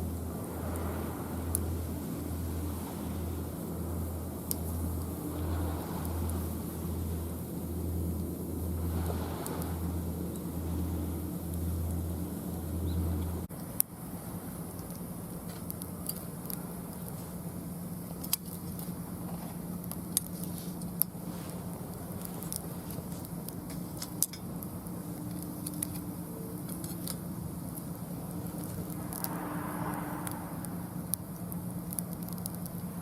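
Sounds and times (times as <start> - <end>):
steady low hum: 0.0 - 33.0
wood fire crackling and popping: 14.7 - 33.0.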